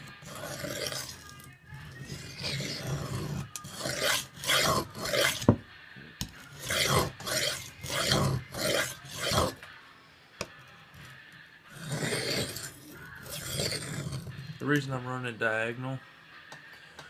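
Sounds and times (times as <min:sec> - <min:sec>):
knife grinding on whetstone: 0:00.0 - 0:05.6, 0:06.4 - 0:09.6, 0:11.7 - 0:14.4.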